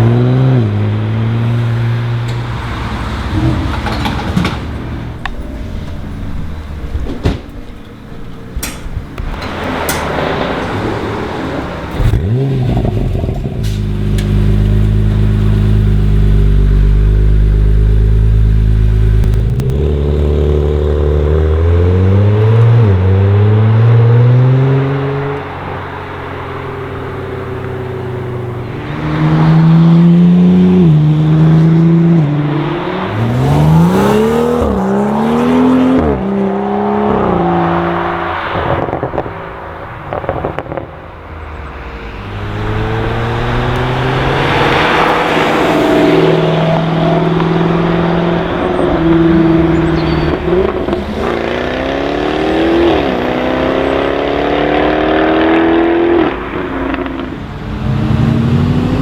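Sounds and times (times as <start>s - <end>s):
cars accelerating hard: 0.0s - 59.0s
exhaust crackles and pops: 2.1s - 20.9s, 37.1s - 58.9s.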